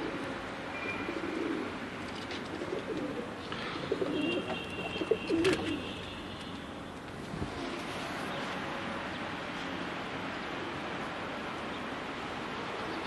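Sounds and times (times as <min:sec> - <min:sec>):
pigeons cooing: 0:00.0 - 0:05.9.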